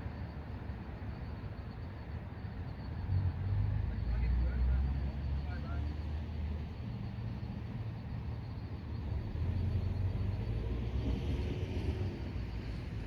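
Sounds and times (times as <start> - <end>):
engine and road noise: 0.0 - 13.0.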